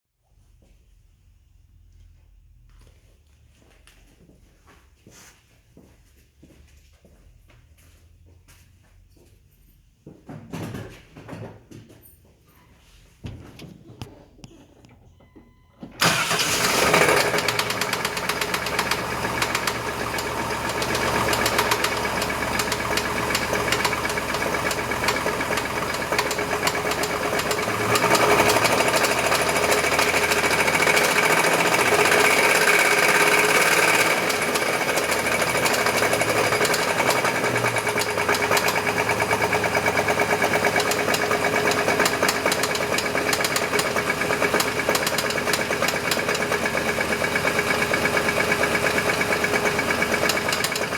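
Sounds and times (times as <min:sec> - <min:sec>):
engine running with knocking: 0:16.0 - 0:50.9.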